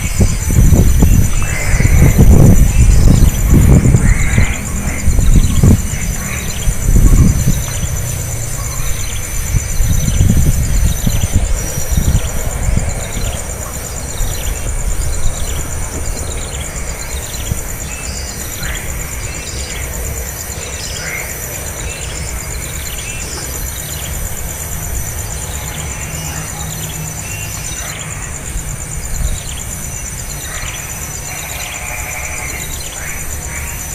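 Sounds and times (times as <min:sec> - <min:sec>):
low rumbling: 0:00.0 - 0:17.8
high insect buzz: 0:00.0 - 0:33.9.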